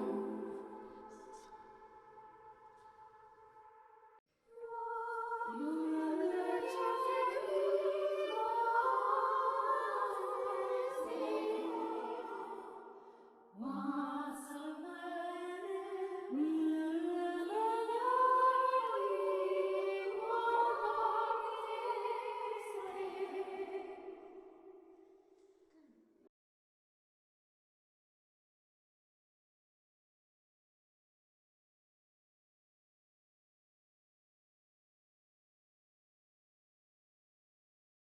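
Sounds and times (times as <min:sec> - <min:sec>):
wordless choir-like singing: 0:00.0 - 0:24.9.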